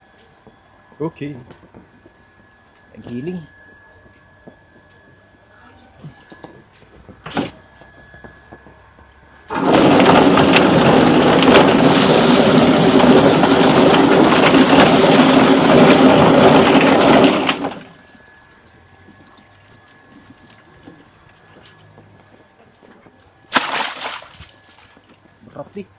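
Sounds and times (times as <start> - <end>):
low motor hum: 5.8 - 23.1
plucking machine rushing clatter: 9.5 - 18.0.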